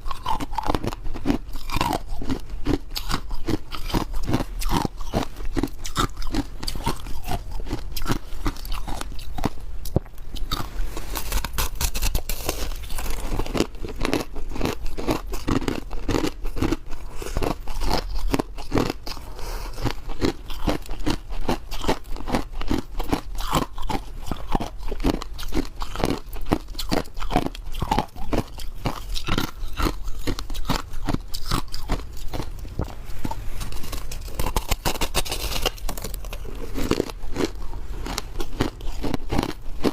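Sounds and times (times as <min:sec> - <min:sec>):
ice being crunched: 0:33.6 - 0:39.6.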